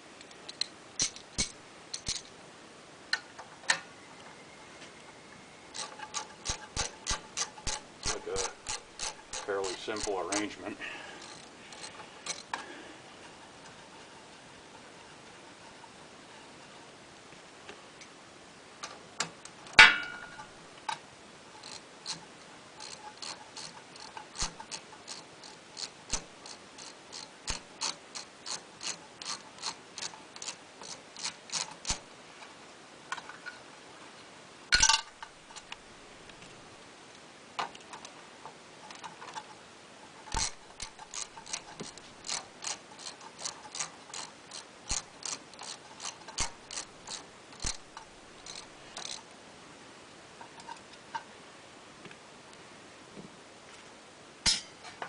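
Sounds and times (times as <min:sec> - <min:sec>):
ratchet wrench clicking: 0:00.5 - 0:02.3, 0:05.7 - 0:10.6, 0:11.2 - 0:12.6, 0:21.6 - 0:22.2, 0:22.8 - 0:32.1, 0:40.3 - 0:49.3
metal knocks: 0:19.7 - 0:20.4.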